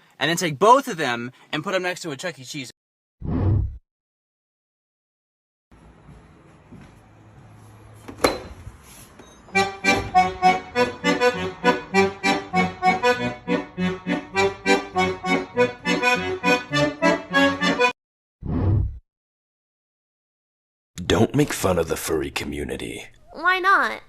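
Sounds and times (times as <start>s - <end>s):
instrumental music: 9.5s - 18.0s.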